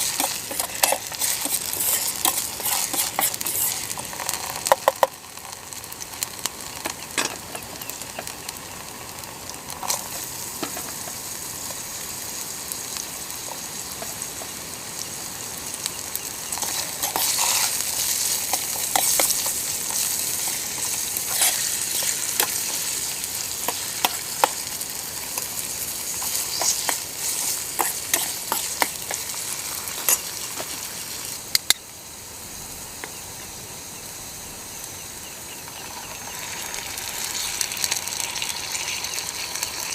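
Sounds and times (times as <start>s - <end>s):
food sizzling in a pan: 0.0s - 39.9s.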